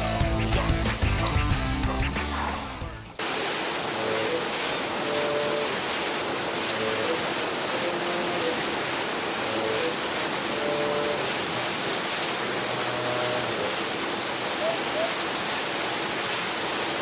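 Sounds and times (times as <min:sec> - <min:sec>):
wind and water rushing: 0:03.1 - 0:17.0
faint tune of short notes: 0:04.0 - 0:05.9, 0:06.7 - 0:11.8.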